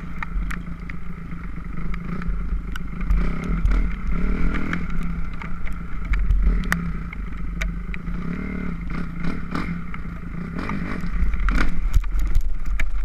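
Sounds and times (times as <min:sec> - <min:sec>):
sharp clattering ticks: 0:00.1 - 0:13.0
dirt bike engine revving: 0:01.2 - 0:05.3, 0:06.3 - 0:12.0.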